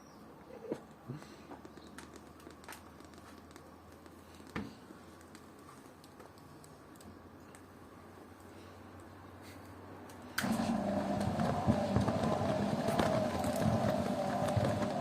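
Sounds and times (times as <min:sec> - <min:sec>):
washing machine motor hum: 0:10.4 - 0:15.0
suds crackling in drum: 0:11.0 - 0:15.0.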